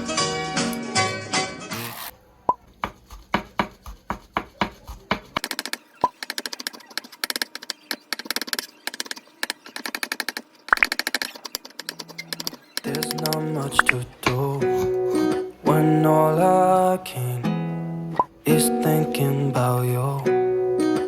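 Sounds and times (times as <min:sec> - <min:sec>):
food prep taps and knocks: 0:02.8 - 0:05.4.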